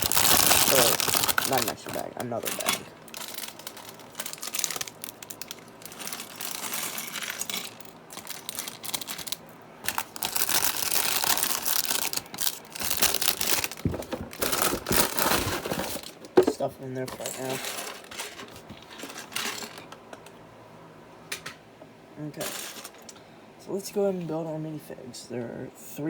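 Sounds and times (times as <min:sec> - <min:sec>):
plastic bags crinkling: 0:00.0 - 0:20.0.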